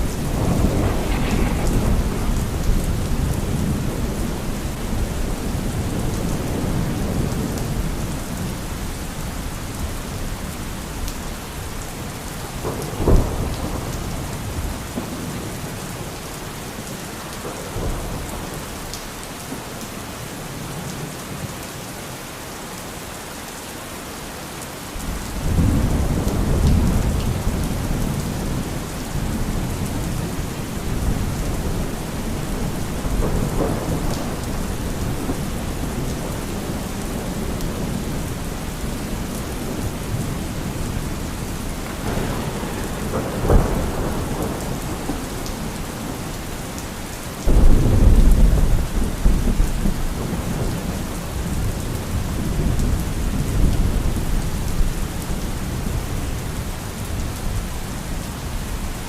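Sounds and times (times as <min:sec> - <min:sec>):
thunder crack: 0:00.0 - 0:05.0, 0:41.9 - 0:45.3
thunder rumbling: 0:00.0 - 0:08.5, 0:25.0 - 0:46.8, 0:47.4 - 0:56.1
heavy rain: 0:00.0 - 0:59.0.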